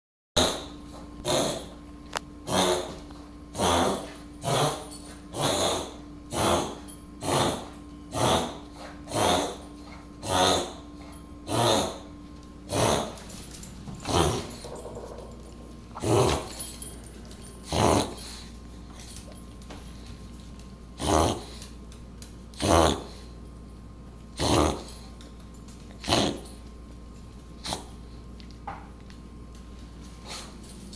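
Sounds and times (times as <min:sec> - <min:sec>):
pet sneezing: 0:00.4 - 0:01.8, 0:02.5 - 0:03.0, 0:12.7 - 0:13.2, 0:27.6 - 0:28.0.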